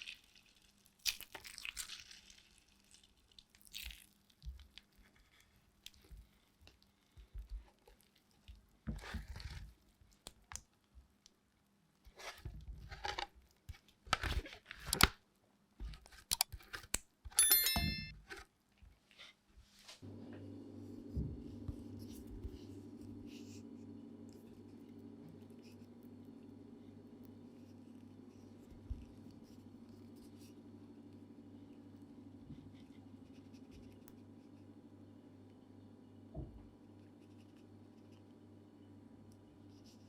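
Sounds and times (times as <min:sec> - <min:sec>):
food preparation crunching and rustling: 0:00.0 - 0:10.6
brief ringing tone: 0:17.4 - 0:18.1
steady low hum: 0:20.0 - 0:40.0.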